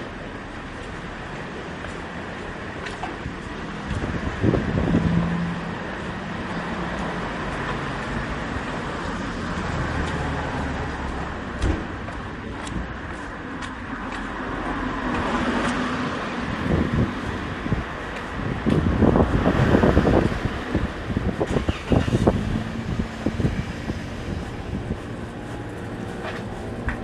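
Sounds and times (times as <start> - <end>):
steady street noise: 0.0 - 27.0
motor vehicle passing: 15.2 - 27.0.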